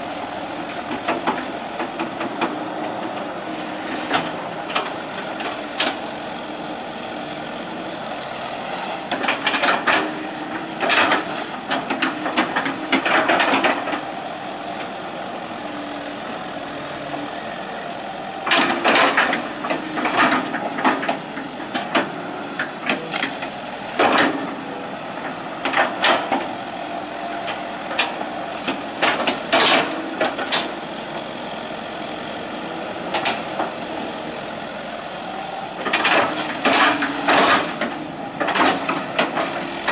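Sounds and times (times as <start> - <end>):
excavator diesel engine running: 0.0 - 39.9.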